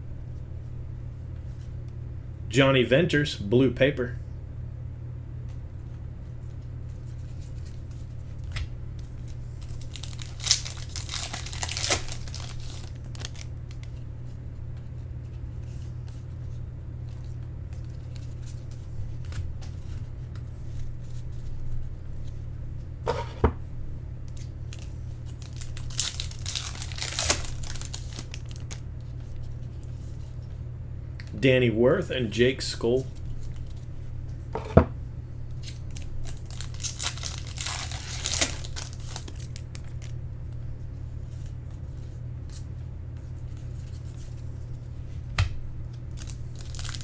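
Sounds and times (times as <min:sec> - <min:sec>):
low electrical hum: 0:00.0 - 0:47.0
foil wrappers crinkling: 0:07.0 - 0:14.0, 0:24.4 - 0:29.9, 0:35.5 - 0:40.2, 0:45.9 - 0:47.0
card packs being torn open: 0:09.2 - 0:14.0, 0:24.4 - 0:28.8, 0:35.6 - 0:40.2, 0:46.1 - 0:47.0.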